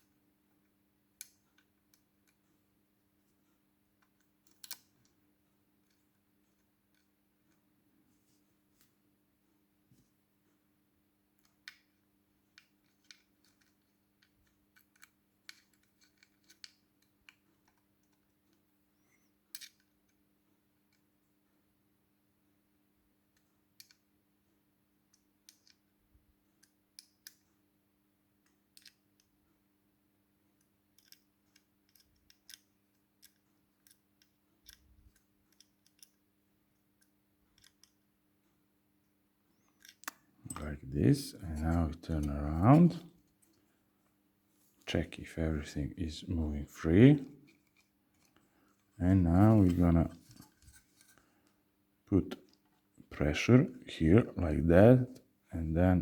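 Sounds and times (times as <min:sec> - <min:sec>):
faint steady hum: 0:00.0 - 0:56.0
small parts clicking and tapping: 0:04.0 - 0:05.2, 0:11.4 - 0:20.2, 0:23.3 - 0:24.1, 0:25.1 - 0:27.5, 0:28.4 - 0:29.4, 0:30.5 - 0:38.1, 0:39.6 - 0:40.6, 0:47.2 - 0:51.6.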